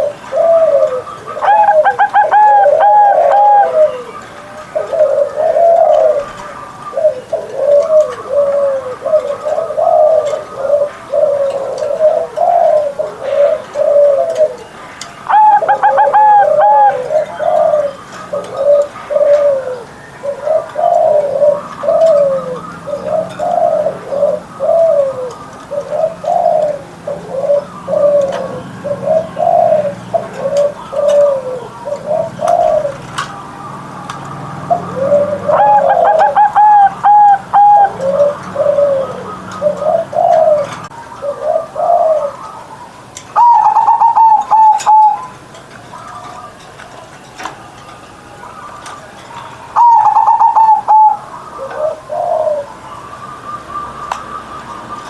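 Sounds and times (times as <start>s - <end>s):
dove cooing: 0.0s - 55.0s.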